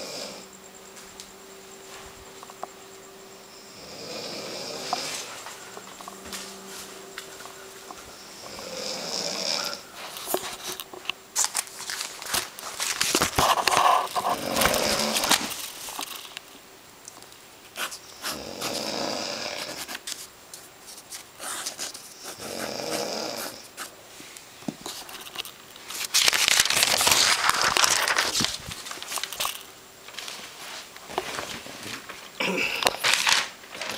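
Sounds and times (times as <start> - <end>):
person snoring: 0.0 - 0.5, 3.7 - 5.3, 8.4 - 9.8, 18.3 - 19.8, 22.4 - 23.6.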